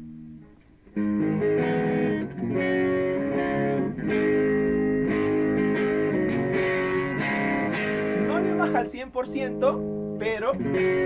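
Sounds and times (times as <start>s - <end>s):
lightly distorted electric guitar chords: 0.0s - 11.0s.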